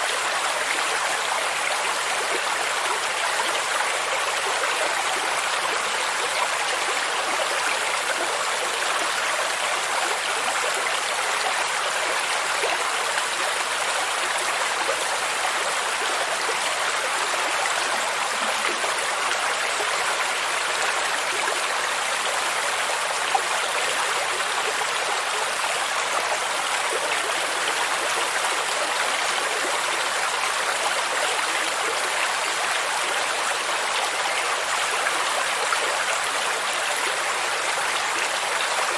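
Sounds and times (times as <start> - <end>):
stream rushing and babbling: 0.0 - 38.9.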